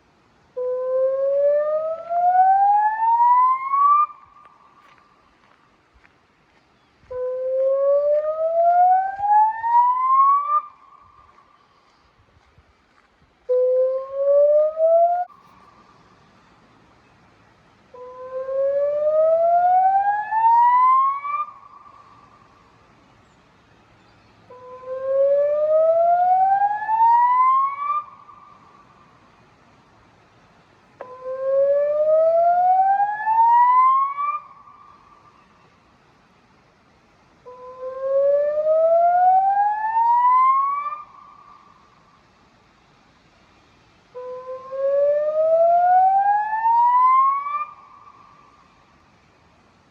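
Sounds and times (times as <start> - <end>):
faint steady tone: 0.0 - 49.9
rising warning siren: 0.7 - 4.2, 7.2 - 10.8, 13.6 - 15.4, 18.1 - 21.7, 24.5 - 28.2, 31.1 - 34.6, 37.6 - 41.1, 44.2 - 47.9.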